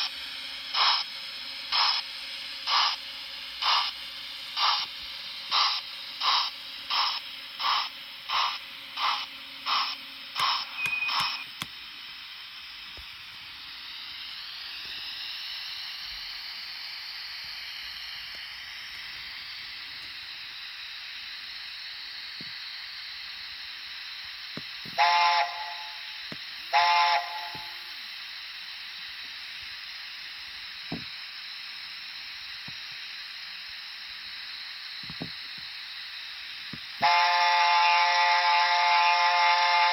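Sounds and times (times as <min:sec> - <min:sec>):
steady steam hiss: 0:00.0 - 0:39.9
steam locomotive exhaust chuffs: 0:00.0 - 0:39.9
chime whistle blasts: 0:10.6 - 0:11.6.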